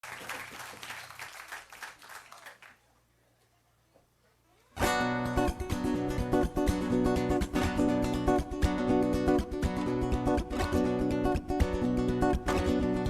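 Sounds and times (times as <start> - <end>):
acoustic guitar strumming: 4.8 - 13.0.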